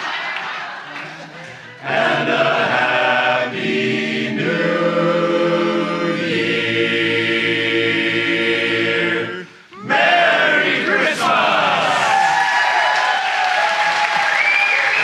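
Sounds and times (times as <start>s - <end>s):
barbershop chorus singing a cappella: 1.8s - 12.1s.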